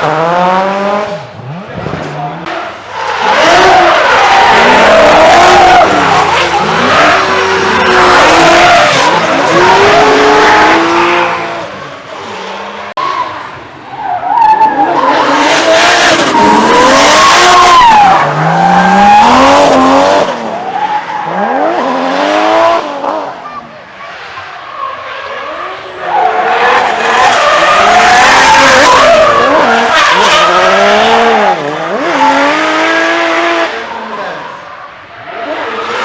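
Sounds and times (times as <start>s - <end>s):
car engine revving: 0.0s - 13.6s, 14.7s - 23.6s, 25.2s - 36.0s
tyres screeching: 1.4s - 11.6s, 24.4s - 36.0s.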